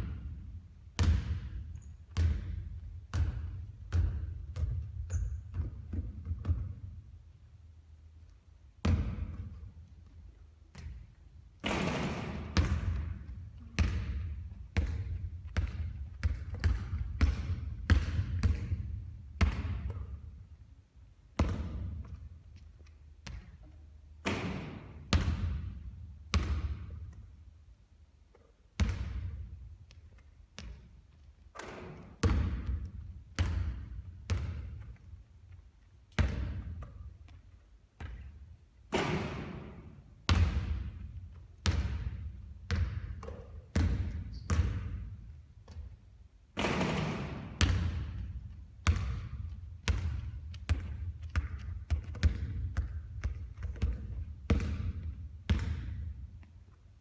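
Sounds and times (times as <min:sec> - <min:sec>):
basketball bouncing thuds: 0:01.0 - 0:07.0, 0:08.8 - 0:09.7, 0:10.7 - 0:20.3, 0:21.4 - 0:22.2, 0:23.2 - 0:27.3, 0:28.8 - 0:29.5, 0:31.6 - 0:35.0, 0:36.2 - 0:37.4, 0:38.9 - 0:45.9, 0:46.6 - 0:56.2.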